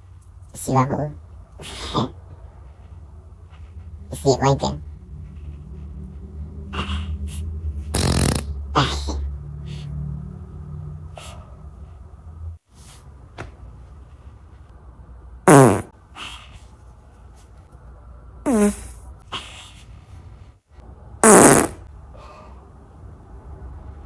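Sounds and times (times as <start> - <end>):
low steady hum: 0.0 - 21.2
farts: 7.9 - 8.9, 15.5 - 15.9, 18.5 - 19.0, 21.2 - 21.9.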